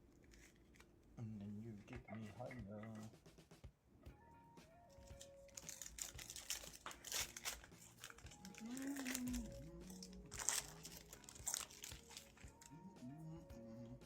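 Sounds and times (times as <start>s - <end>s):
foil wrappers crinkling and tearing: 0.1s - 1.0s, 4.9s - 12.8s.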